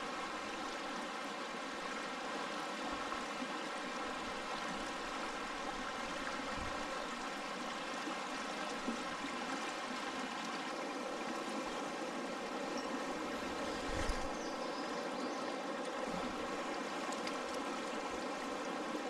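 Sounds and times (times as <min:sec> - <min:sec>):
river water rushing: 0:00.0 - 0:14.7, 0:15.8 - 0:19.0.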